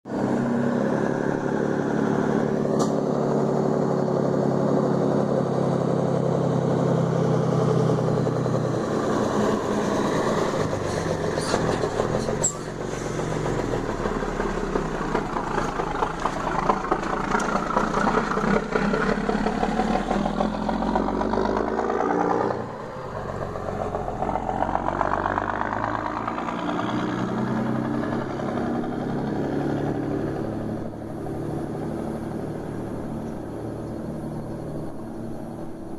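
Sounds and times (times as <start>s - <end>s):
truck diesel engine revving: 0.1s - 35.7s.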